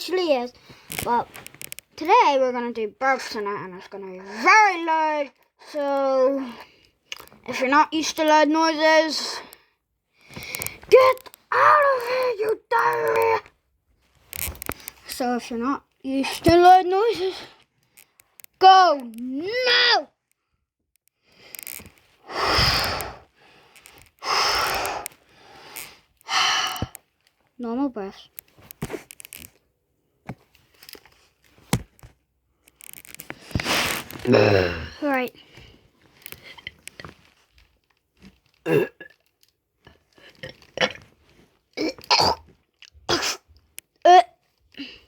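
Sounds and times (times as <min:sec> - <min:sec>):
heavy breathing into microphone: 0:22.2 - 0:27.0
person burping: 0:34.2 - 0:35.0, 0:38.6 - 0:39.2, 0:40.4 - 0:41.1, 0:41.8 - 0:42.5.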